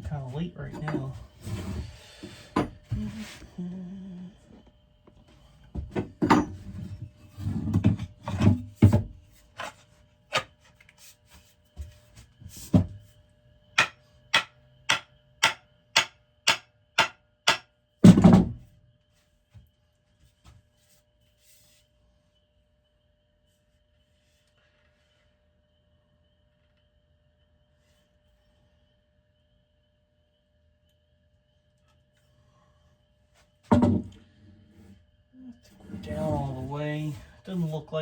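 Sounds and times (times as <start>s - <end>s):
axe head knocked onto wooden handle: 13.8s - 18.5s.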